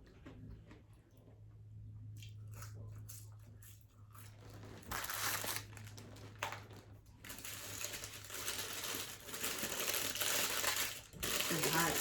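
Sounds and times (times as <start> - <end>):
paper wrapper crinkling: 4.8 - 12.0.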